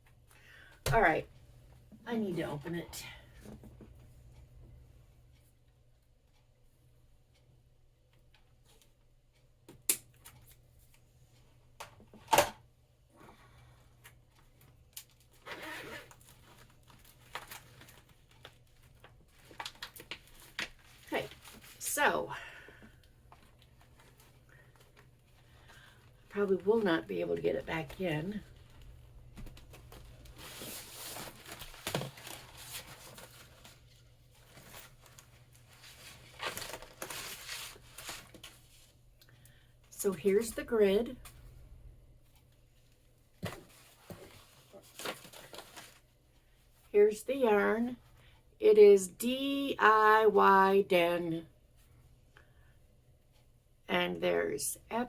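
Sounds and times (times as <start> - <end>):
packaging rustling: 16.1 - 21.8, 28.5 - 38.9, 43.5 - 46.1.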